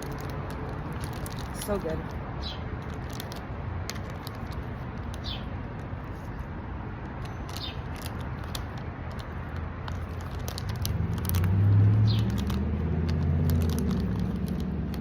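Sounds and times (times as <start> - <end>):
bird chirping: 2.4 - 2.7, 5.2 - 5.5, 7.3 - 7.9, 12.0 - 12.4.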